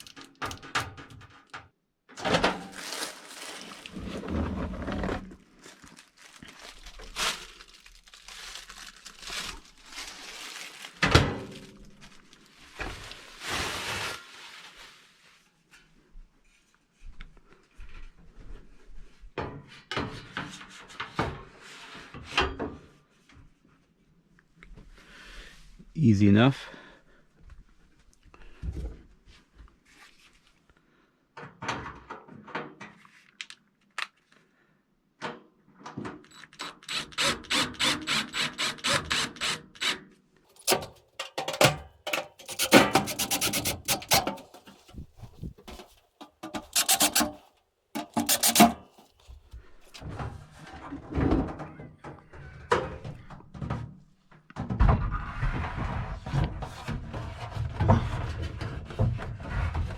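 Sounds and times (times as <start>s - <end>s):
microwave scraping in wooden cabinet: 3.8s - 5.4s, 42.3s - 47.4s
quick repeated scraping strokes: 42.4s - 44.5s, 46.6s - 47.4s, 48.0s - 48.9s.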